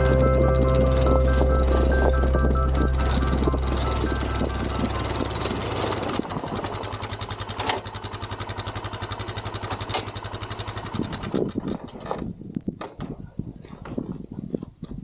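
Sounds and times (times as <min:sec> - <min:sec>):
quad engine idling: 0:00.0 - 0:11.9.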